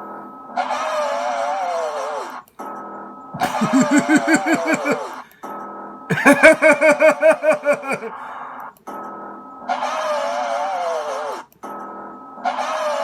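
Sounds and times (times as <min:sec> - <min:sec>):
voice making comic sounds: 0:03.4 - 0:05.2, 0:06.1 - 0:08.3.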